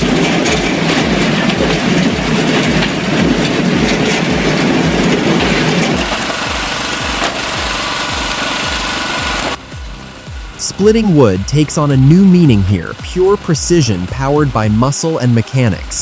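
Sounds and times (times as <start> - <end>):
background music with beat: 0.0 - 16.0
heavy machinery running: 0.0 - 16.0.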